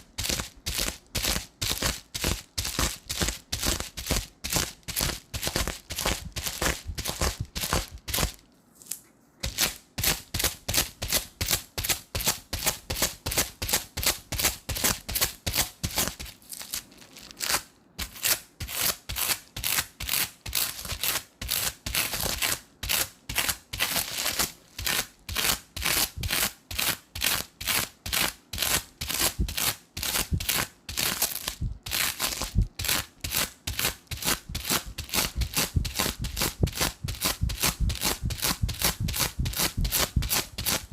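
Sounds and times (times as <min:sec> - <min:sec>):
tape peeling off sticky residue: 0:14.8 - 0:40.9.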